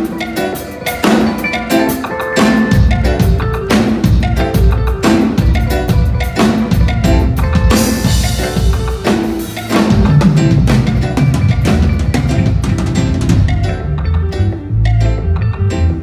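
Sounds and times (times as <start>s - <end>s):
drum kit: 0.0s - 16.0s
instrumental band music: 0.0s - 16.0s
bass: 2.4s - 16.0s.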